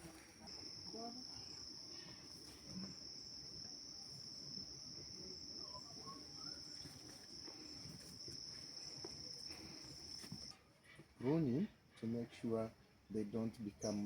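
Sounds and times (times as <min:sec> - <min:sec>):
cricket trilling: 0:00.0 - 0:10.5.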